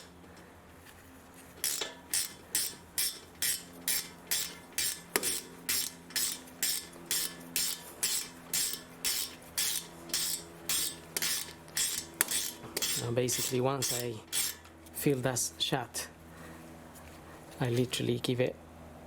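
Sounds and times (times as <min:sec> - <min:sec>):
ratchet wrench clicking: 0:01.6 - 0:14.6
sharp metal click: 0:01.6 - 0:14.6.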